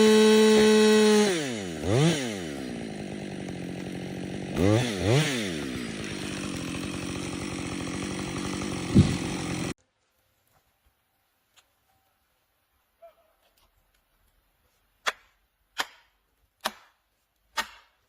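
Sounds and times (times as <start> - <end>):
chainsaw engine revving and idling: 0.0 - 9.8.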